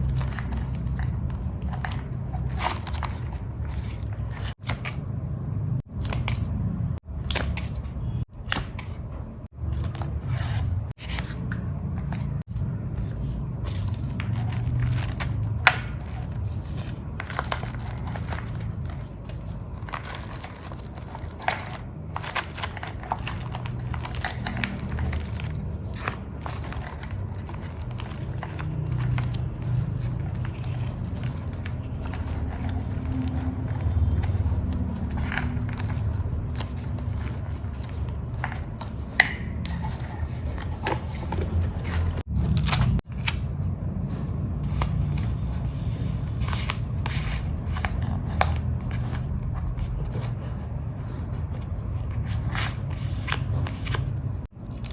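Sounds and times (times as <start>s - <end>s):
paper rustling and crinkling: 0.0s - 5.0s, 9.7s - 43.5s, 44.7s - 54.9s.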